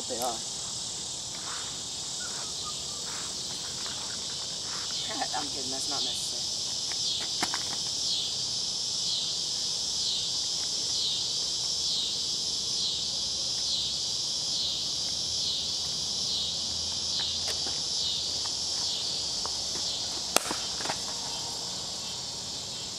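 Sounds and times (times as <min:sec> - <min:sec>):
insect chorus buzzing: 0:00.0 - 0:22.9.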